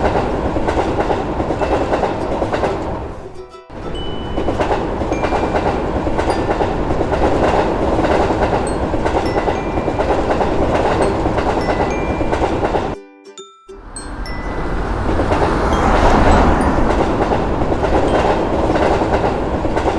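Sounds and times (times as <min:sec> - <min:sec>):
train wheels clattering over rails: 0:14.1 - 0:19.9.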